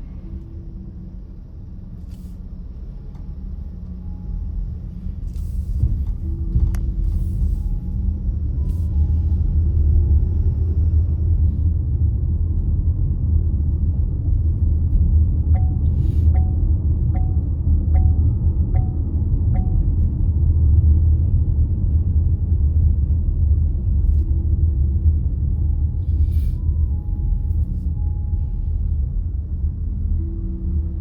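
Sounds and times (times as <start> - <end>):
car road and engine rumble: 0.0 - 31.0
turn signal clicking: 15.6 - 20.2.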